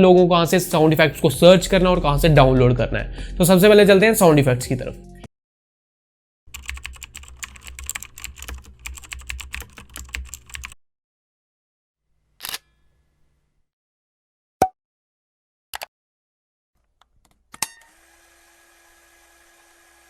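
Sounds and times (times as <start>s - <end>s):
keyboard typing: 6.5s - 10.8s
sharp click: 12.4s - 12.7s.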